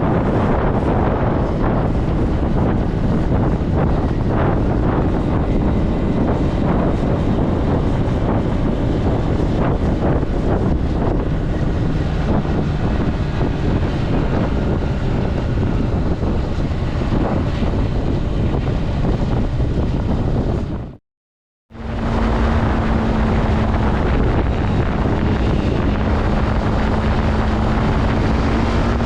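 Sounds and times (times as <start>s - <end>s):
wind buffeting microphone: 0.0s - 21.0s, 21.7s - 29.0s
scooter engine running: 21.7s - 29.0s.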